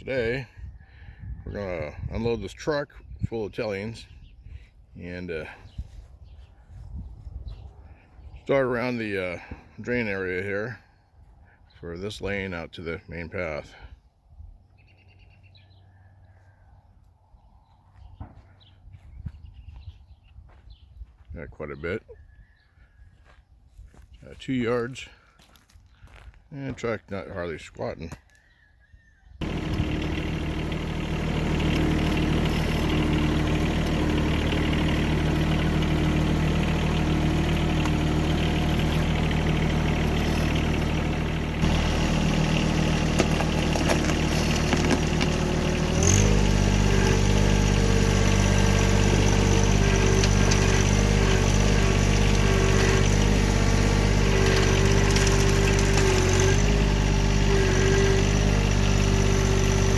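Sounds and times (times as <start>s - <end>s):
engine running: 29.4s - 59.9s.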